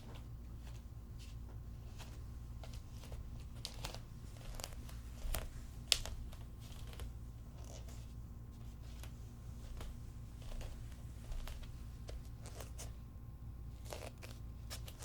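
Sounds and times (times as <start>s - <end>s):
low room hum: 0.0s - 15.0s
bare footsteps on floor: 8.6s - 12.8s.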